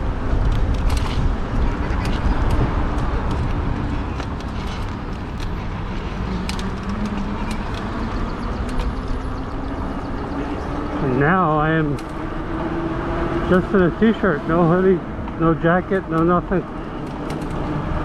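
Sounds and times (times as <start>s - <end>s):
wind rush: 0.0s - 8.8s
road noise: 0.0s - 18.0s
small clicks: 17.0s - 17.7s.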